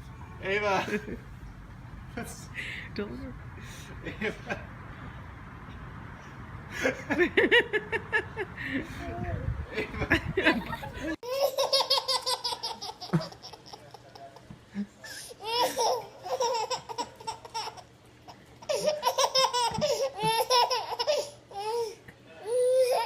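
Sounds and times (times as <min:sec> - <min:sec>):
child giggling: 0:07.1 - 0:14.0, 0:18.7 - 0:21.9.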